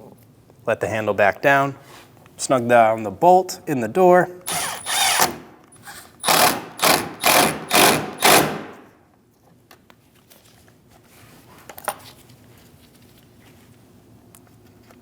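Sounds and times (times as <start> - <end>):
cordless drill pulses: 4.5 - 8.8.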